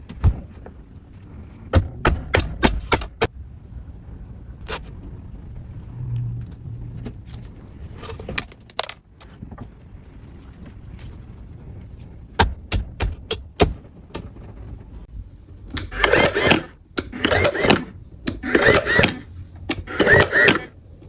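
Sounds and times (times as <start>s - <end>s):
sharp clicks and knocks: 0.0s - 3.3s, 12.4s - 14.5s, 15.5s - 20.7s
low steady rumble: 0.0s - 21.0s.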